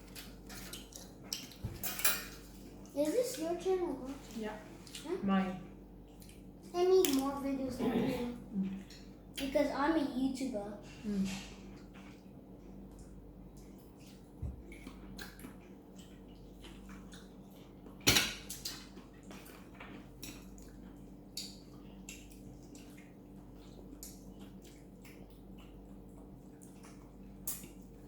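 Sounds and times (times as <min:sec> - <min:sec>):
faint steady hum: 0:00.0 - 0:28.0
dishes and cutlery clinking: 0:00.1 - 0:02.6, 0:18.0 - 0:19.0
utensils clattering: 0:01.4 - 0:02.4.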